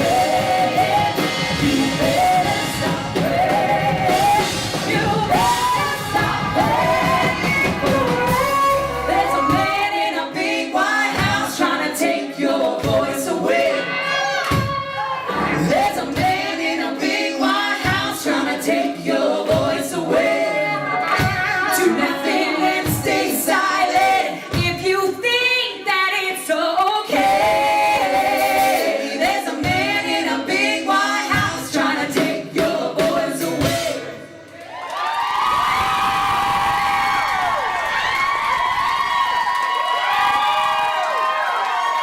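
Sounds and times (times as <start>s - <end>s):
steady percussive beat: 0.0s - 9.9s, 27.3s - 34.4s
a cappella group singing in harmony: 0.0s - 34.6s.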